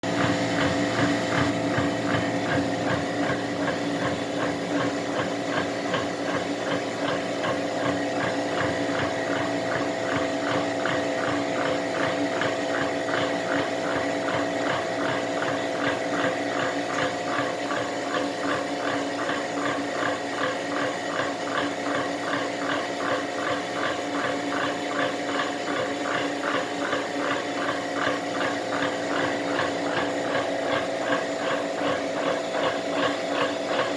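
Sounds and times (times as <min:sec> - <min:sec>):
steady hum: 0:26.8 - 0:33.9.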